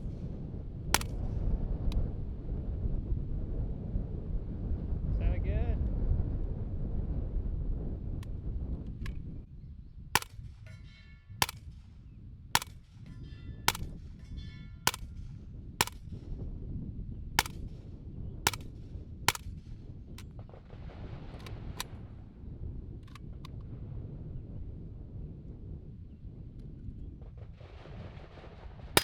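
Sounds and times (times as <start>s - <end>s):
low wind rumble: 0.0s - 29.0s
suppressed gunshots: 0.9s - 1.4s, 10.2s - 10.7s, 11.4s - 12.0s, 12.6s - 13.1s, 13.7s - 13.9s, 14.9s - 16.3s, 17.4s - 20.3s
sharp pops: 1.0s - 1.2s, 10.2s - 10.4s, 12.6s - 12.8s, 17.4s - 17.7s, 18.5s - 18.7s.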